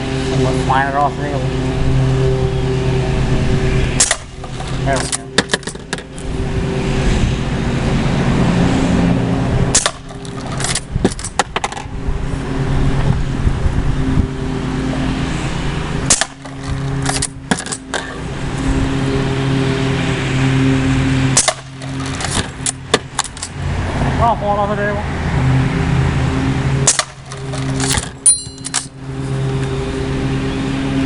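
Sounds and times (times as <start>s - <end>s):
metallic lever clicks: 26.9s - 28.9s.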